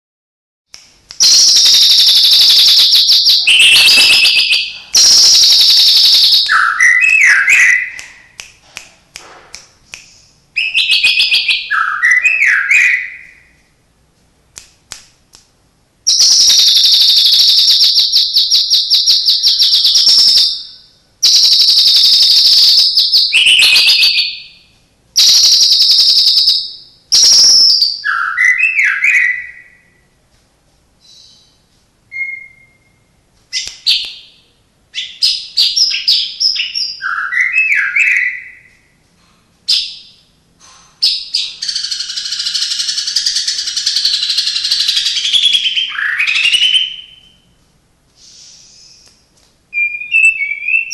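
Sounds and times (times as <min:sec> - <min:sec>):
bird singing rattling trills: 0:01.2 - 0:08.0, 0:16.1 - 0:24.5, 0:25.2 - 0:29.6, 0:41.0 - 0:47.4.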